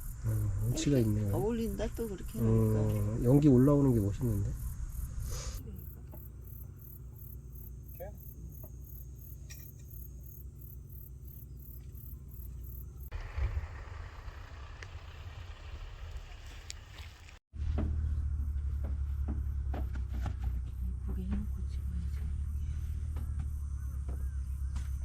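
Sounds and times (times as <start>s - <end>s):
crickets chirping: 0.0s - 17.4s, 18.1s - 25.0s
low rumble: 13.1s - 19.5s.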